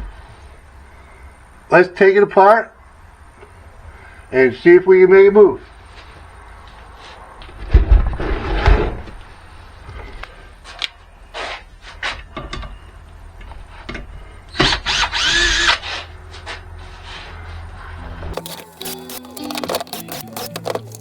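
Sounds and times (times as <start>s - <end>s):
tool clatter and knocks: 12.1s - 14.8s
power drill whining: 14.5s - 15.9s, 18.4s - 21.0s.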